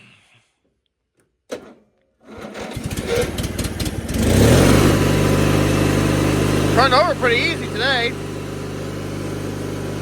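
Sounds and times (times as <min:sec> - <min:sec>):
electric starter cranking engine: 0:02.2 - 0:10.0
mower engine running: 0:02.3 - 0:10.0.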